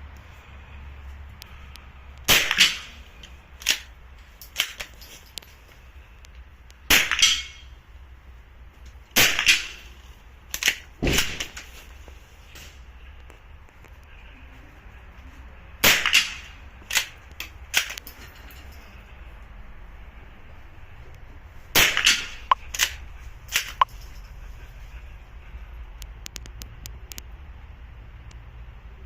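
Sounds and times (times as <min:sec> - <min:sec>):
rifle shots cracking: 0:02.2 - 0:03.0, 0:06.9 - 0:07.6, 0:09.2 - 0:09.8, 0:10.5 - 0:11.6, 0:15.8 - 0:18.0, 0:21.7 - 0:23.8.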